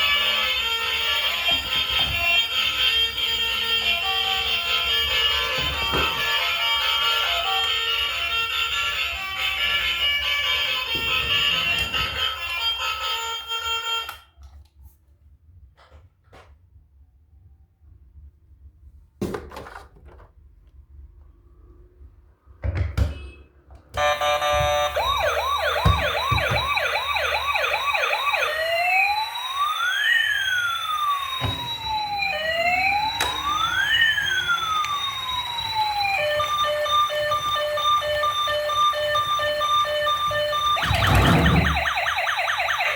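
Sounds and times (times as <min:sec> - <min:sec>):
toy electronic siren: 0:00.0 - 0:14.4, 0:24.0 - 0:42.9.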